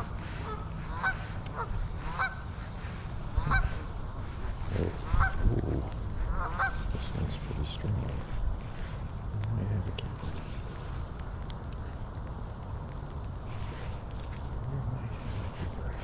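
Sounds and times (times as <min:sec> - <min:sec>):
geese honking: 0:00.0 - 0:03.9, 0:04.8 - 0:05.6, 0:06.2 - 0:06.9.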